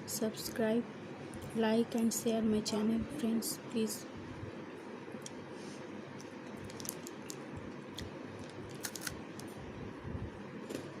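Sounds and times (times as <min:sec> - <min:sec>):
chewing crunchy wafer: 0:06.6 - 0:09.5.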